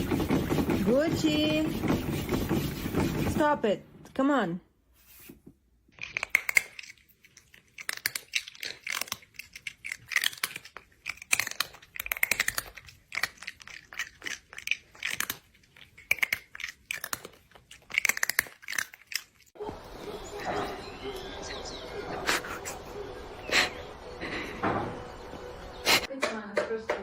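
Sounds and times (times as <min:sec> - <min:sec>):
cat chewing and crunching: 0:05.9 - 0:20.6.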